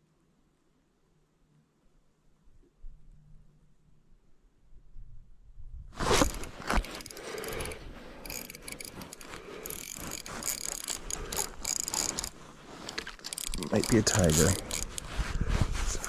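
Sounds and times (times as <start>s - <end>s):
fishing reel ratcheting: 6.4s - 15.1s.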